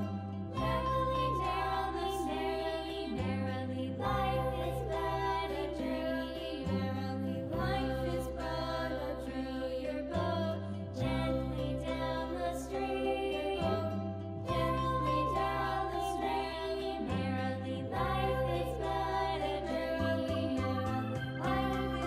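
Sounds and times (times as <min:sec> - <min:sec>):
person singing children's song: 0:00.0 - 0:22.0
sustained low chords: 0:17.0 - 0:22.0.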